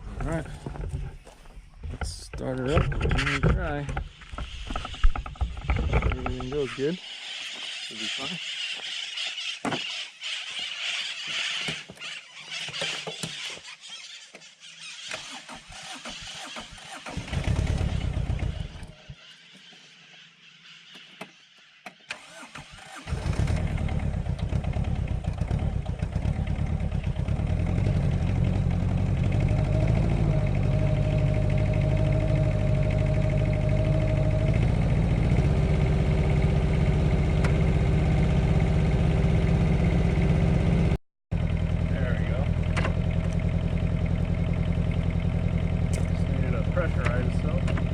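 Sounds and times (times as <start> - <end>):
diesel engine running: 0.0 - 1.4, 15.8 - 18.9, 22.2 - 47.9
diesel engine cranking: 15.0 - 19.0, 22.1 - 47.9.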